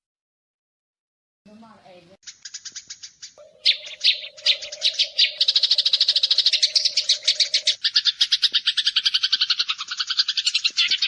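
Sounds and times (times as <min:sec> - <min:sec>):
sparrow chirping rapidly: 0:02.2 - 0:11.0.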